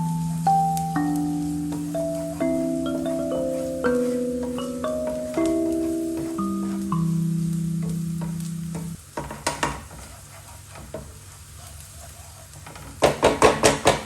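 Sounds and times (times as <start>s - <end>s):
soft mallet music notes: 0.0s - 9.0s
faint sizzle: 0.0s - 13.2s
stirring in a frying pan: 1.3s - 14.0s
loud knocks: 13.0s - 14.0s.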